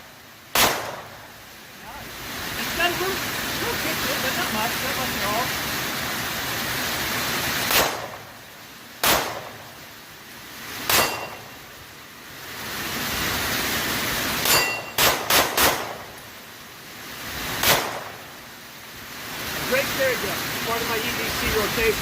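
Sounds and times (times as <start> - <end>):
pistol shots: 0.5 - 1.1, 7.7 - 8.2, 9.0 - 9.6, 10.9 - 11.3, 14.4 - 16.0, 17.6 - 18.1.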